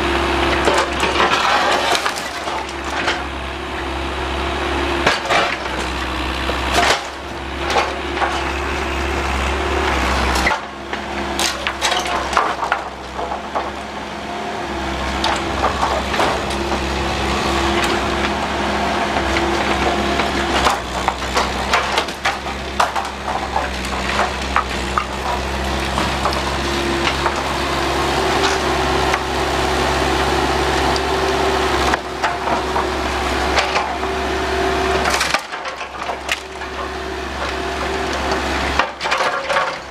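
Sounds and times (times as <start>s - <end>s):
excavator engine running: 0.0s - 39.9s
wood cracking and splintering: 0.5s - 3.3s, 5.0s - 39.9s.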